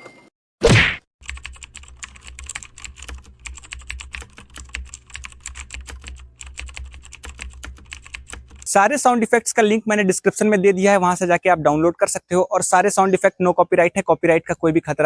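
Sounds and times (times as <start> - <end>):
keyboard typing: 1.2 - 8.7.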